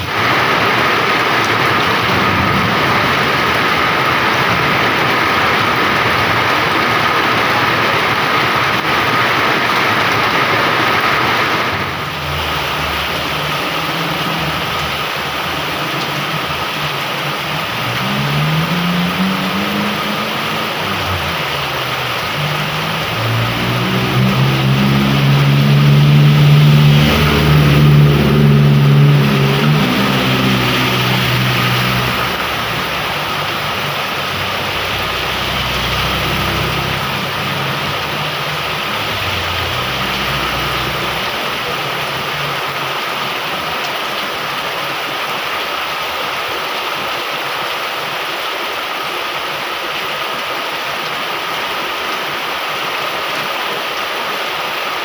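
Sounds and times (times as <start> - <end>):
vehicle engine running: 0.0 - 42.8
heavy rain falling: 0.0 - 55.0.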